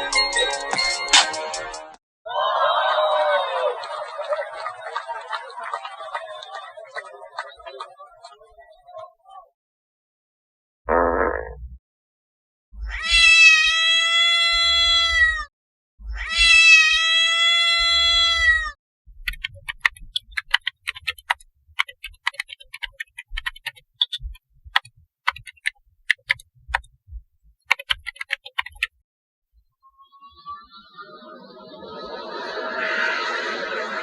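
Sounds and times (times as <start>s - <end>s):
meow-like cries: 12.8s - 15.5s, 16.1s - 18.8s
sharp clicks and ticks: 19.2s - 29.0s.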